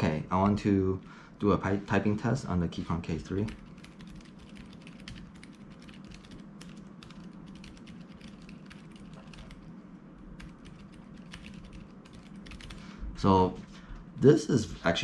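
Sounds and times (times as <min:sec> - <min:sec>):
quiet keyboard typing: 0:03.2 - 0:12.8.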